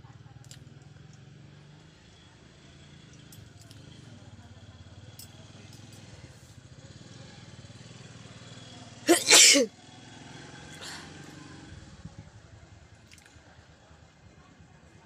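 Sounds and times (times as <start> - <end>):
person sneezing loudly: 9.1 - 9.7.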